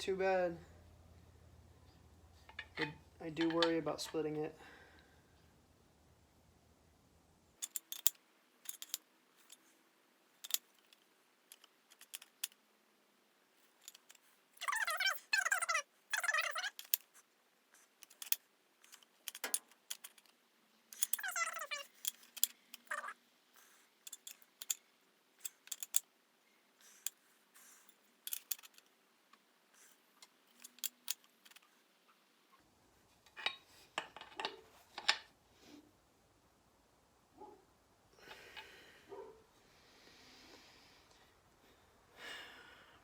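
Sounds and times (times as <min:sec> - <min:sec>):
short squeaks: 0:21.0 - 0:22.0, 0:22.8 - 0:23.2.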